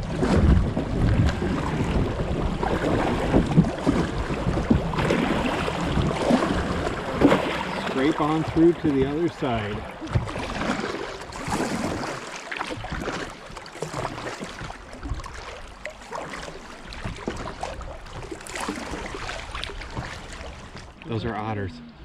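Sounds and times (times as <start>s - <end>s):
kayak hull scraping over rocks: 0.0s - 20.9s
water running: 4.2s - 10.7s.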